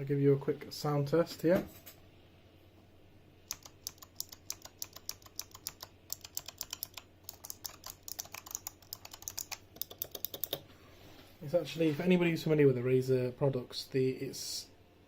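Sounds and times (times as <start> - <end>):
keyboard keystroke clicks: 3.5 - 10.6.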